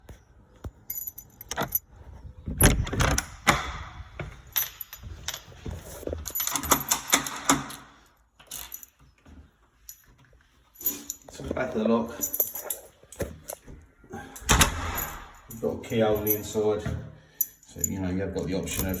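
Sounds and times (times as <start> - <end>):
keys jangling: 0.8 - 1.9, 4.2 - 9.0, 9.8 - 13.6, 14.3 - 16.8, 18.6 - 19.0
lock clicking and knocking: 0.9 - 1.8, 2.6 - 5.3, 6.2 - 8.0, 14.4 - 15.6.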